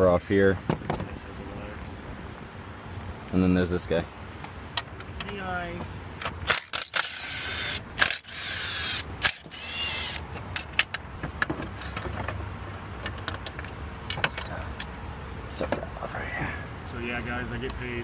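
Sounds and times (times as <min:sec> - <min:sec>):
tools clicking and knocking: 0:08.0 - 0:14.9.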